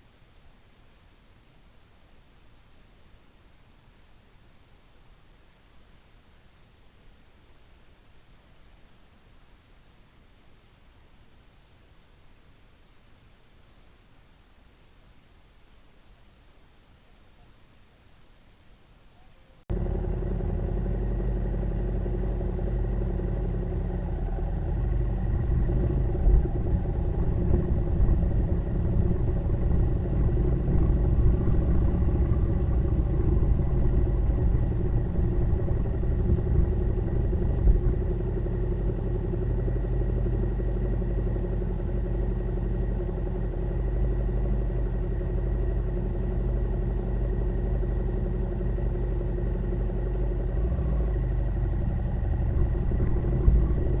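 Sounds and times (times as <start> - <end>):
road noise: 19.7 - 54.0
vehicle engine running: 19.7 - 54.0.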